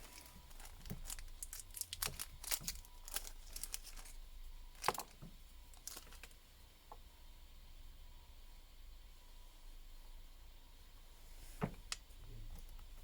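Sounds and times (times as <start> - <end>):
plastic parts clicking and tapping: 0.5 - 4.1.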